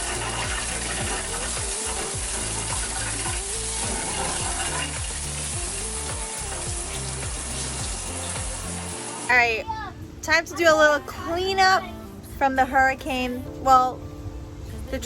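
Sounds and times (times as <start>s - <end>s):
background music with beat: 0.0s - 9.2s
shower water running: 0.0s - 9.6s.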